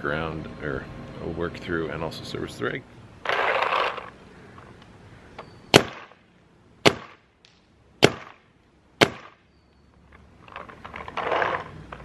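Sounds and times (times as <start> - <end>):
paintball marker shots: 5.7 - 6.2, 6.8 - 8.4, 9.0 - 9.4.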